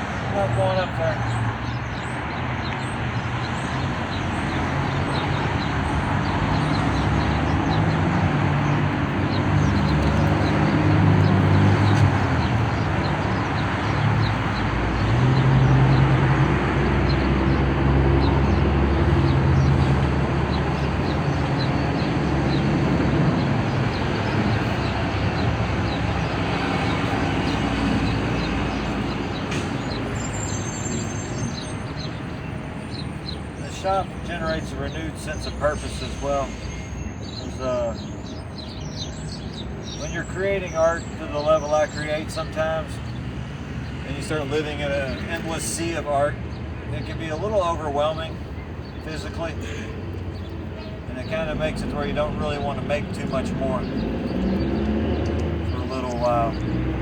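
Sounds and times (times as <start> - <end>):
passing vehicles: 0.0 - 57.0
heavy vehicle engine: 47.3 - 57.0.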